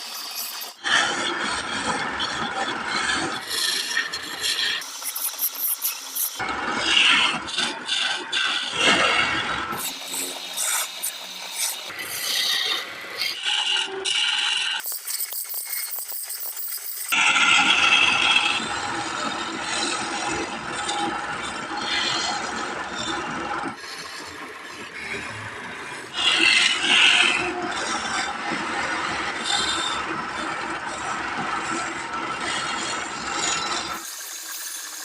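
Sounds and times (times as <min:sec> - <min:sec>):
wood lathe tool scraping wood: 0:00.0 - 0:23.1, 0:26.1 - 0:35.0.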